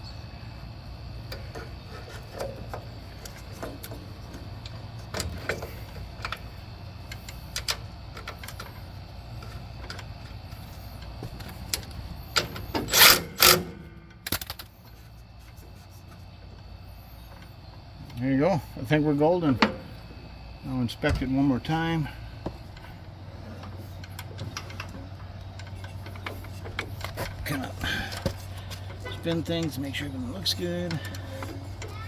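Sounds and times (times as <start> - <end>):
steady low hum: 0.0 - 32.0
hand tools clinking on metal: 24.0 - 32.0.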